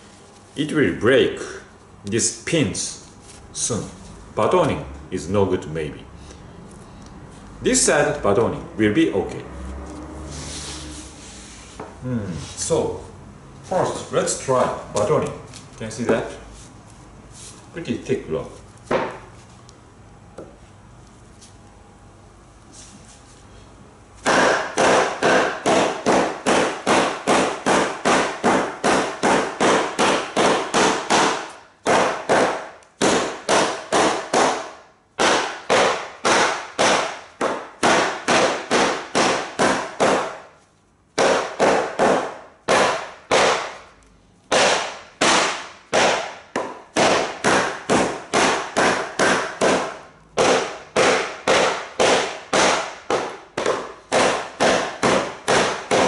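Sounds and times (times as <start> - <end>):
wooden baton striking hatchet: 18.9 - 19.3, 24.2 - 40.6, 41.2 - 43.9, 44.5 - 56.0.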